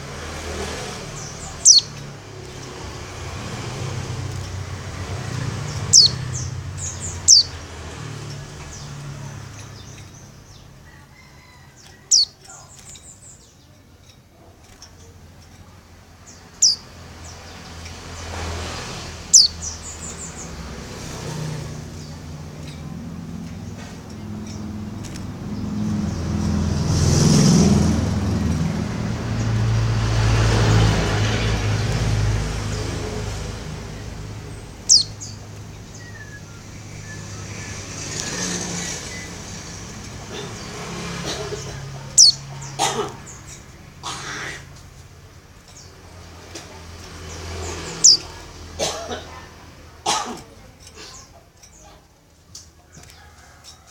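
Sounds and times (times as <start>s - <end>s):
road traffic rumble: 0.0s - 53.9s
bird chirping: 0.9s - 18.3s, 18.9s - 26.6s, 30.8s - 43.8s, 45.6s - 48.7s.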